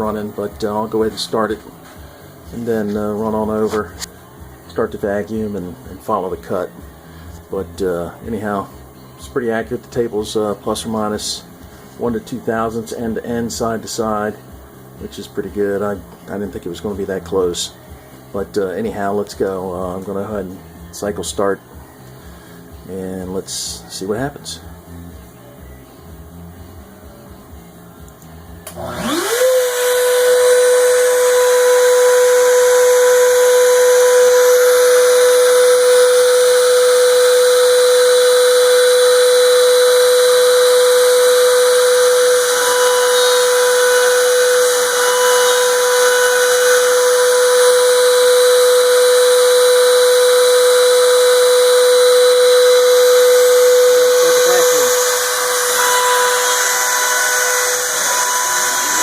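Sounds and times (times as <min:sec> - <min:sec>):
router spindle whine: 0:26.4 - 0:59.0.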